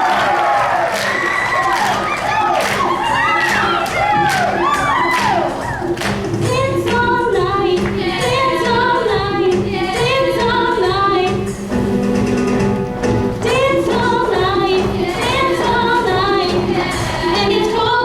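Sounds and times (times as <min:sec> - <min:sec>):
women's chorus singing a cappella: 0:06.4 - 0:18.0.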